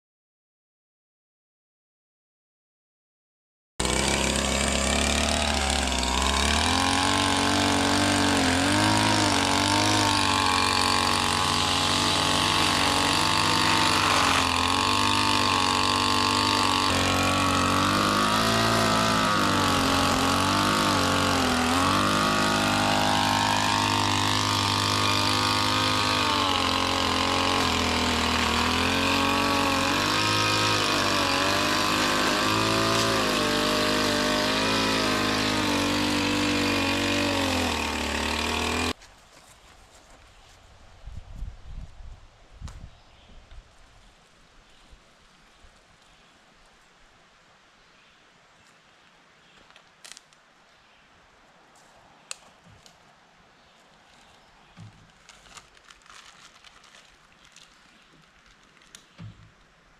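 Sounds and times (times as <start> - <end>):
small engine running: 3.8 - 39.0.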